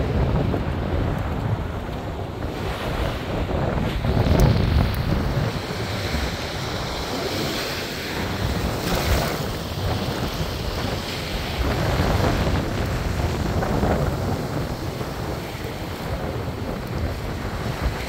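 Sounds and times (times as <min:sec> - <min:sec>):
sea waves breaking: 0:00.0 - 0:18.0
strong wind on microphone: 0:00.0 - 0:18.0.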